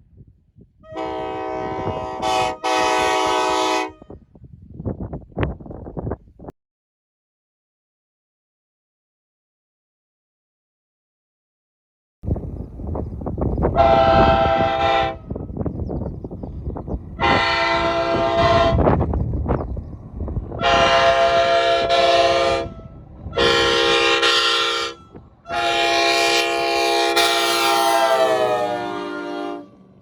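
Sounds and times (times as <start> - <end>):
train horn blasts: 0.8 - 4.2, 13.7 - 15.5, 17.2 - 19.1, 20.5 - 30.0.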